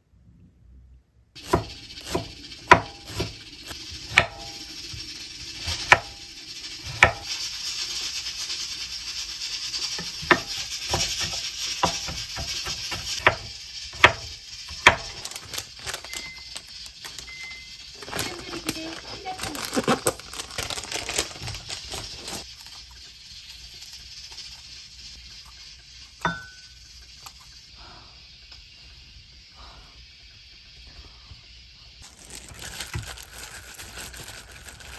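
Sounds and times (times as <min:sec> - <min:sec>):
utensils and dishes clinking: 0:01.4 - 0:23.0, 0:26.2 - 0:26.8
steady hiss: 0:01.4 - 0:34.9.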